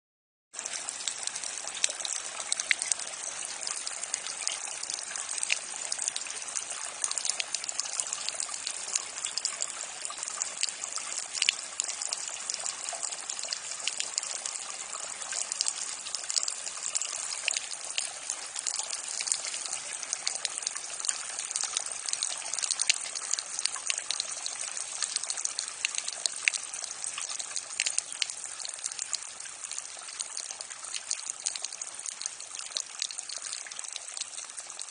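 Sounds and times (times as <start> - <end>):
rainwater gushing from downspout: 0.6 - 34.9
water drips and splats: 0.6 - 34.9.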